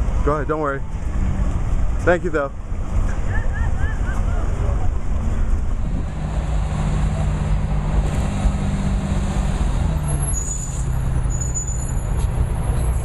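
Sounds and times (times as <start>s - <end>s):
vehicle engine running: 4.1s - 10.3s
faint high squeals: 10.0s - 13.0s.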